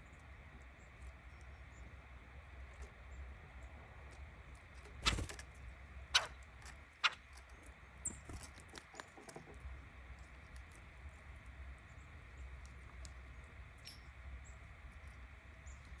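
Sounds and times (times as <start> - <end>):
woodpecker knocking: 6.2 - 6.4, 7.0 - 7.3.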